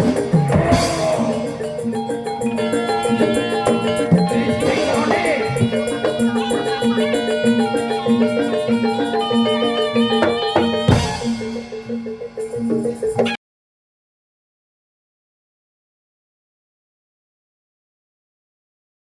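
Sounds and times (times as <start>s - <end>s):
sharp loud percussion hit: 0.0s - 6.8s, 10.6s - 13.3s
drums: 0.0s - 13.4s
metallophone notes: 0.0s - 13.4s
rattling percussion: 0.0s - 13.4s.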